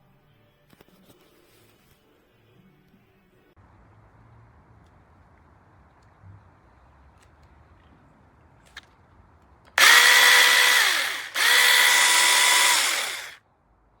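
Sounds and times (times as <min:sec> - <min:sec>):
electric chainsaw motor whine: 0:09.8 - 0:13.4.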